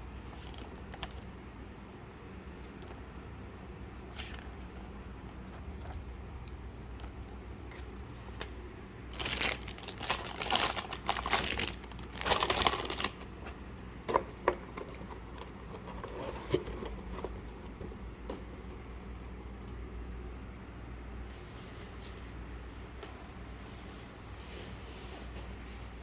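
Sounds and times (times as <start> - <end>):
packaging crinkling: 9.1 - 13.5.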